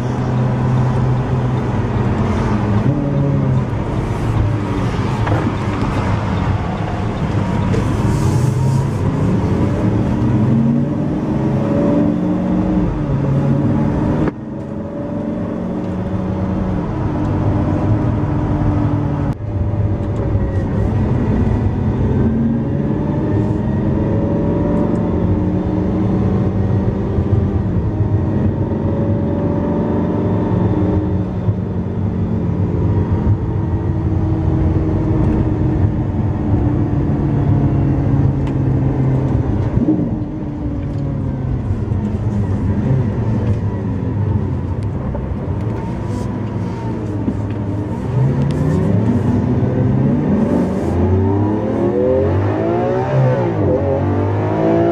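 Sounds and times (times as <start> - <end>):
car engine accelerating: 0.0 - 54.9.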